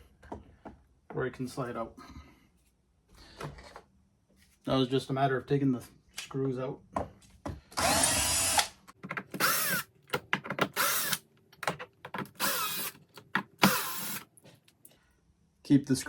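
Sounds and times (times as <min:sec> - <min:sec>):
power drill-driver running: 0:07.8 - 0:08.8, 0:09.4 - 0:09.9, 0:10.7 - 0:11.2, 0:12.4 - 0:13.0, 0:13.6 - 0:14.3.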